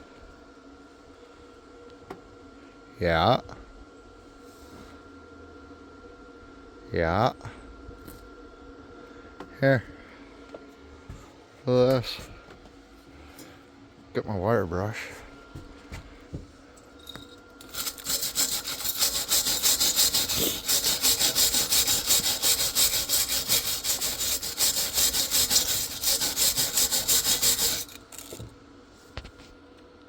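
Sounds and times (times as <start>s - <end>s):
wire brush scrubbing steel: 17.6s - 28.4s.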